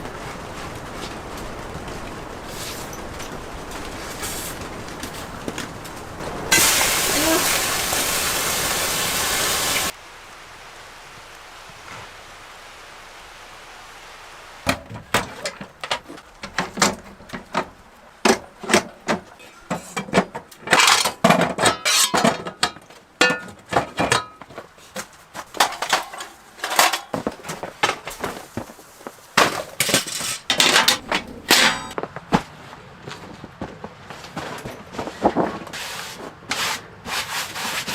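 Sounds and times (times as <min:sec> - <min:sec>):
steady hiss: 0:00.0 - 0:14.7.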